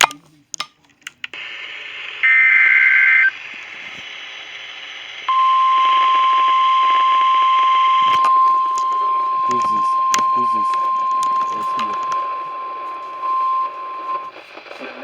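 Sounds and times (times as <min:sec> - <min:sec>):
radio hiss: 0:01.2 - 0:15.0
warbling data header burst: 0:04.6 - 0:15.0
steady warning alarm tone: 0:05.3 - 0:15.0.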